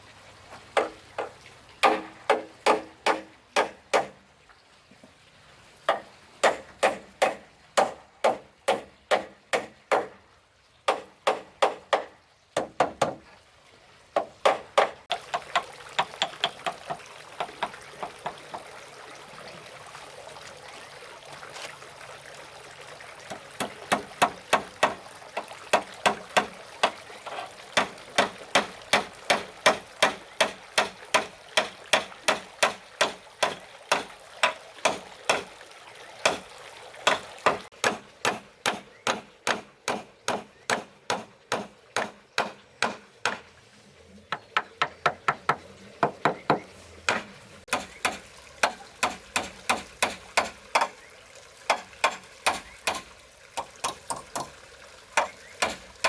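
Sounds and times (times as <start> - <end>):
hand tool striking wood: 0.8 - 4.2, 5.9 - 10.2, 10.9 - 13.2, 14.2 - 18.4, 23.3 - 25.0, 27.8 - 35.5, 37.0 - 43.5, 44.5 - 51.0, 51.7 - 54.5, 55.2 - 55.8.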